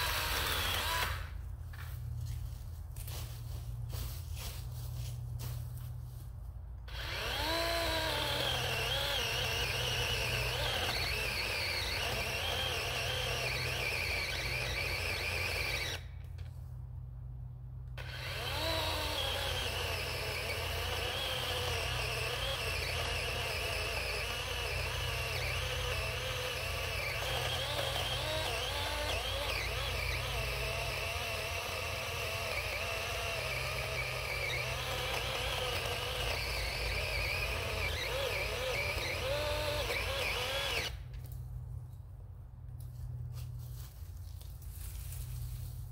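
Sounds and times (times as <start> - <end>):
electric chainsaw cutting wood: 0.0 - 1.4, 6.8 - 16.1, 17.9 - 41.2.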